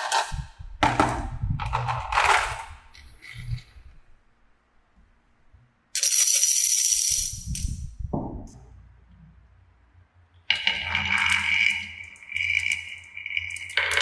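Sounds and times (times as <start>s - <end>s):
low rolling rumble: 7.4s - 9.0s
knock: 8.1s - 8.5s.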